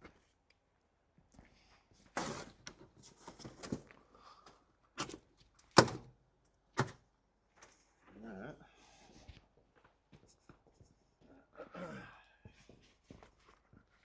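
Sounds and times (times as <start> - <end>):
parts and packaging handled: 2.2 - 4.0.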